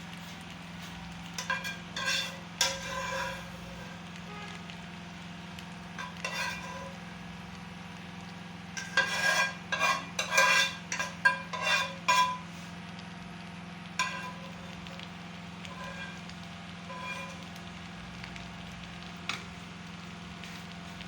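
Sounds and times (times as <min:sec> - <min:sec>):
metal spoon scraping pot: 0:01.3 - 0:04.6, 0:06.0 - 0:07.0, 0:08.8 - 0:12.6, 0:14.0 - 0:15.0, 0:15.6 - 0:17.6.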